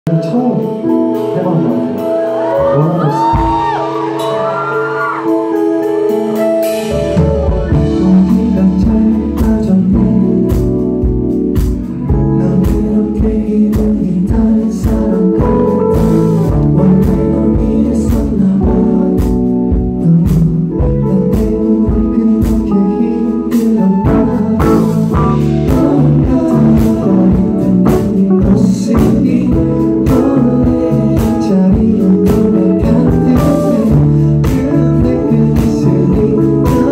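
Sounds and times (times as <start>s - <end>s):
drums and bass beat: 0.1s - 36.9s
person singing: 0.1s - 36.9s
band playing held chords: 23.6s - 36.9s.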